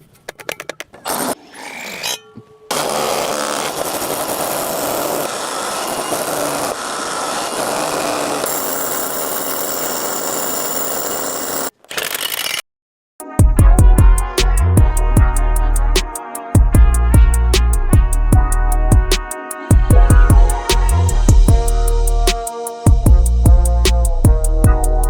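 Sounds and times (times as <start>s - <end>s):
hammer drill boring into concrete: 2.7s - 12.6s.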